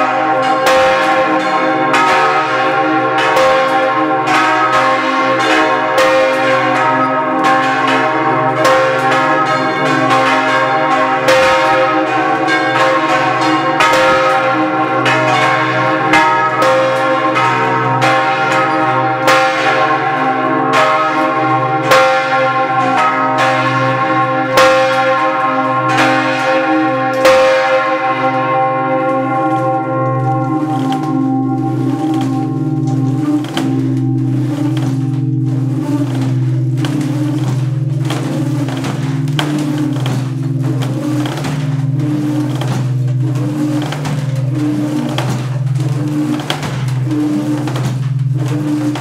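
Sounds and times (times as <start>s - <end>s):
church bells pealing: 0.0s - 49.0s
low bell hum: 28.4s - 47.5s.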